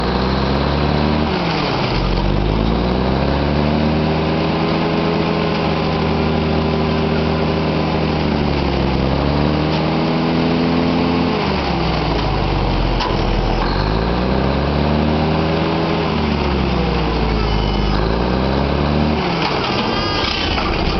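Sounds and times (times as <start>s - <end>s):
diesel engines revving: 0.0s - 20.9s.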